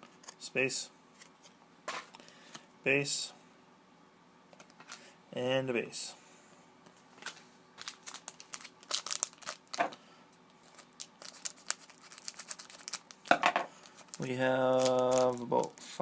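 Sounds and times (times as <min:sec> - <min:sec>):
cards rustling and clicking: 0:07.2 - 0:10.0, 0:10.6 - 0:13.2, 0:13.8 - 0:15.8
foil wrapper crinkling and tearing: 0:07.8 - 0:10.0, 0:10.6 - 0:16.0.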